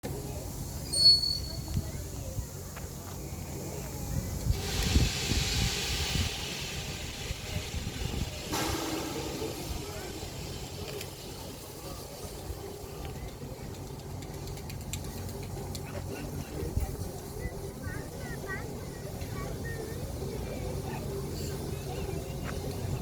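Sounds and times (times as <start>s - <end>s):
people talking: 0.0s - 23.0s
steam hissing: 3.2s - 13.5s
low rumble: 8.5s - 10.8s.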